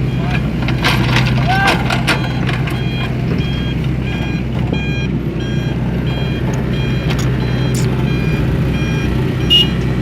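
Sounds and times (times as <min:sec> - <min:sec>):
engine humming: 0:00.0 - 0:10.0
reversing alarm beeping: 0:02.1 - 0:09.8.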